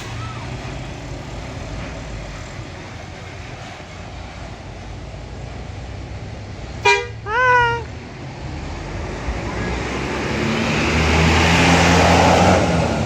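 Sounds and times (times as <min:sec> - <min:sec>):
bus engine rumbling: 0:00.0 - 0:13.0
two-note bus horn: 0:06.8 - 0:07.8.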